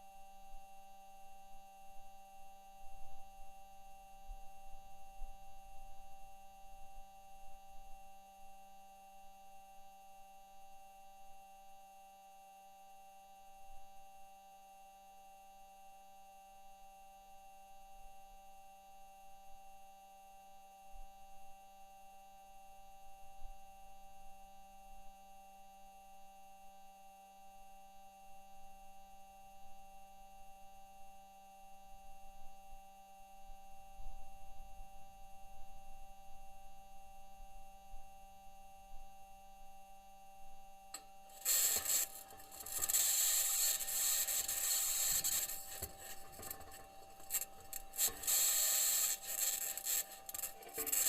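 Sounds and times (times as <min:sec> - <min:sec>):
faint whine of held tones: 0:00.0 - 0:51.0
electrical hum tones: 0:41.2 - 0:51.0.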